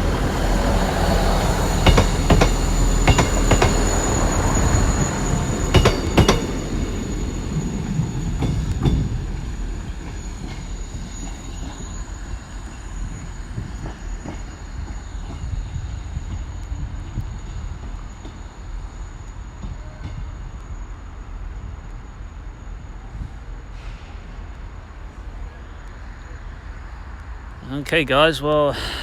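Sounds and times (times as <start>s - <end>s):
diesel train running past: 0.0s - 29.0s
wheels clicking over rail joints: 1.7s - 4.1s, 5.7s - 6.8s.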